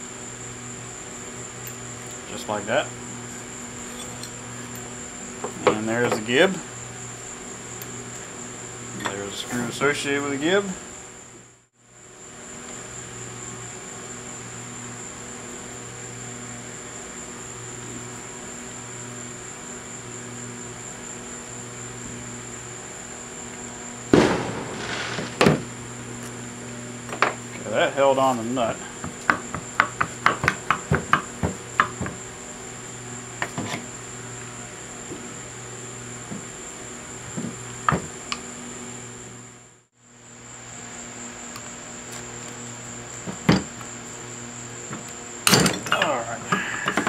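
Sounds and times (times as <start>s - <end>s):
steady background hum: 0.0s - 47.0s
fireworks bangs: 24.1s - 26.2s.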